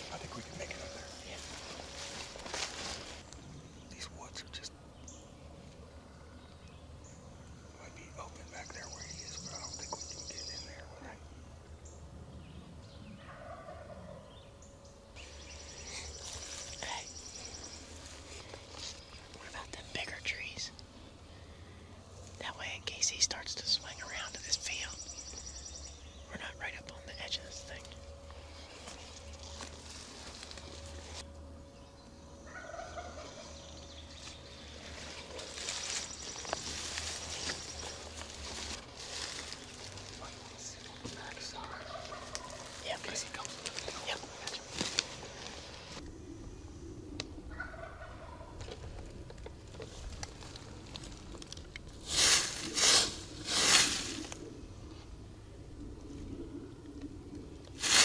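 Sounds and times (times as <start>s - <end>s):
distant turkey gobbling: 13.2s - 14.4s, 32.4s - 33.8s, 41.4s - 42.8s, 47.4s - 48.9s.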